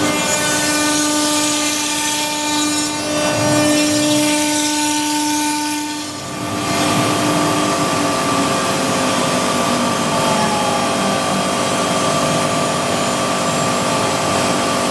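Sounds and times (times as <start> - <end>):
cnc router cutting board: 0.0 - 14.9.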